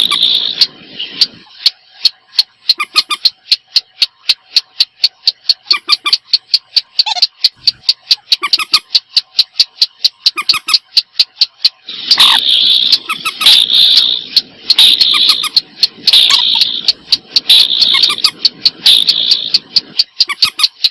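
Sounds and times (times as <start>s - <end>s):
bird calls sharp clicking notes: 5.6s - 6.4s, 7.0s - 11.3s, 12.1s - 20.9s.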